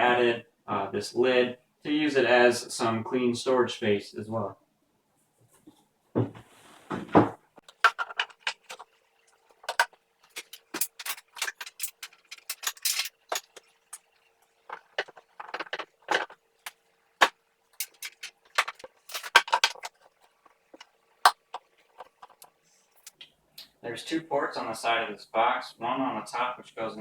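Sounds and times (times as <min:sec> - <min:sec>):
sharp clicks and light knocks: 0:07.6 - 0:08.9, 0:17.8 - 0:23.3.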